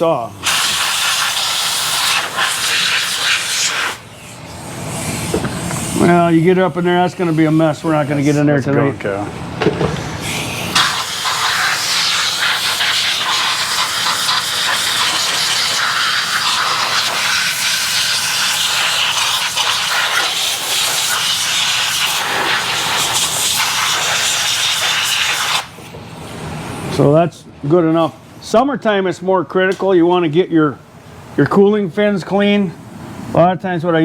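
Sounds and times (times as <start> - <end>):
compressed air blowgun hissing: 0.4 - 8.5, 10.0 - 25.8.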